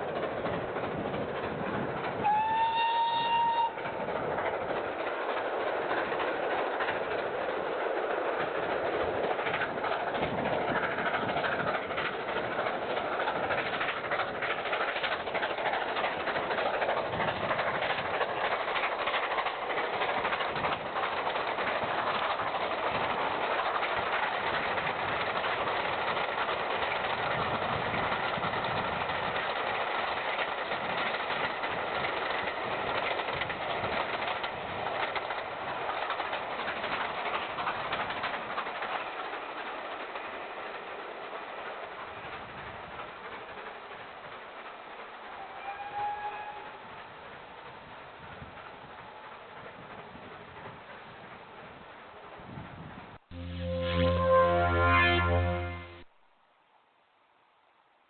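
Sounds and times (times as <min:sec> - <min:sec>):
wheels clacking over rail joints: 0:00.0 - 0:51.6
train exhaust and wheel noise: 0:00.0 - 0:56.2
steam locomotive whistle: 0:02.2 - 0:03.8, 0:45.4 - 0:46.8, 0:53.3 - 0:56.1.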